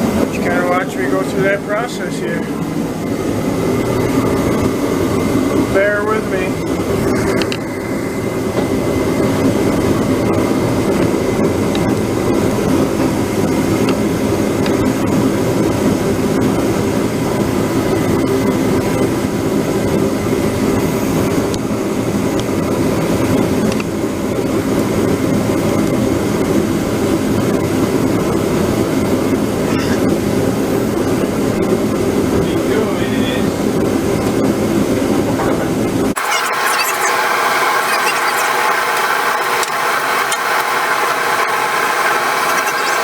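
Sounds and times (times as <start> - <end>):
machine running steadily: 36.1 - 43.0
faint high whine: 36.2 - 43.0.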